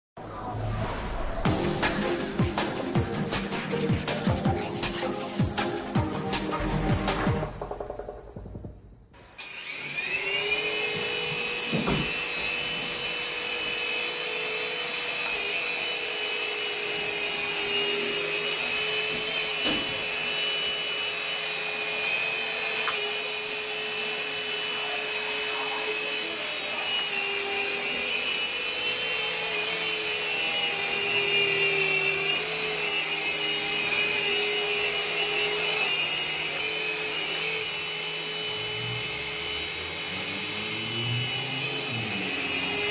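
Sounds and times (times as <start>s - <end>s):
toy helicopter rotors whining: 9.4s - 42.9s.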